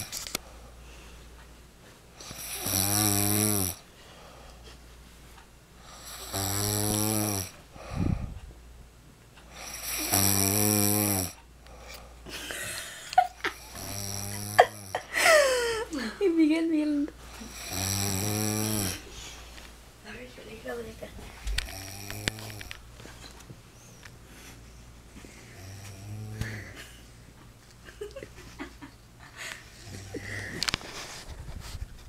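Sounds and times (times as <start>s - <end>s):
man snoring: 2.2s - 3.8s, 5.9s - 8.2s, 9.5s - 11.4s, 13.5s - 15.1s, 17.4s - 19.0s, 21.6s - 22.8s, 25.5s - 26.8s.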